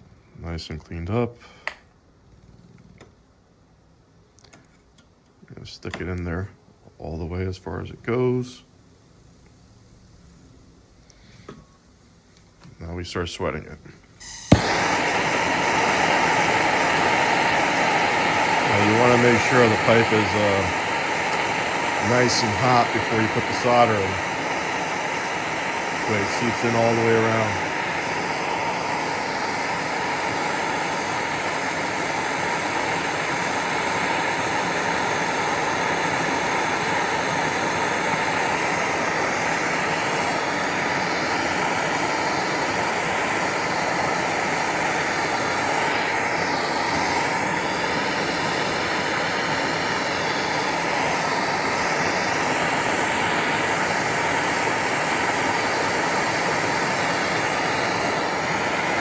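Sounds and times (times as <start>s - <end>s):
torch flame hissing: 14.0s - 59.0s.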